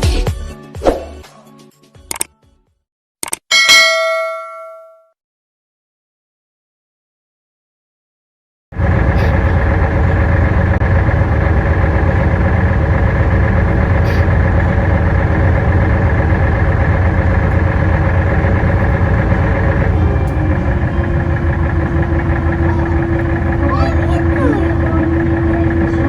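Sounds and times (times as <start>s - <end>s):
boat engine droning: 8.8s - 26.0s.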